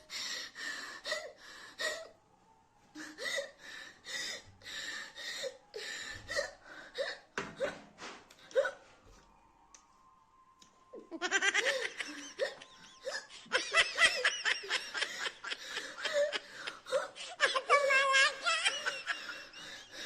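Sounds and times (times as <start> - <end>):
woman gasping for breath: 15.0 - 17.5.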